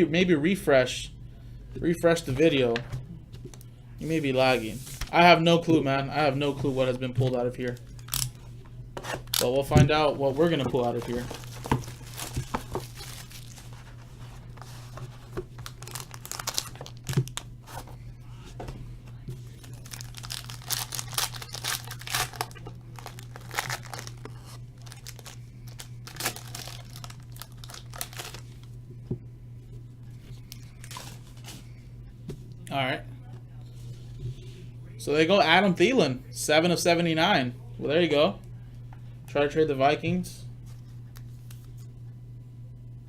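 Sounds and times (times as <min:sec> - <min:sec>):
steady low hum: 0:00.0 - 0:43.0
plastic wrapping tearing and crinkling: 0:07.9 - 0:08.4, 0:10.9 - 0:14.0, 0:15.5 - 0:17.5, 0:19.5 - 0:28.7, 0:30.5 - 0:31.5.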